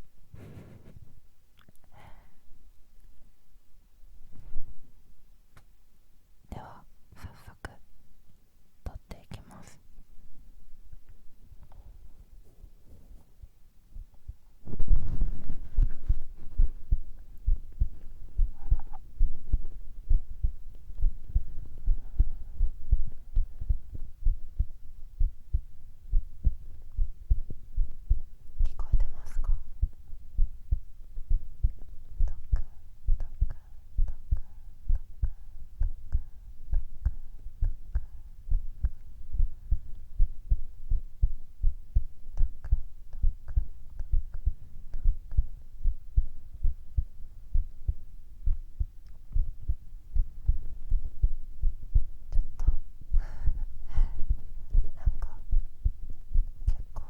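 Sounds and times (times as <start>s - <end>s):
heartbeat thumps: 13.4s - 57.0s.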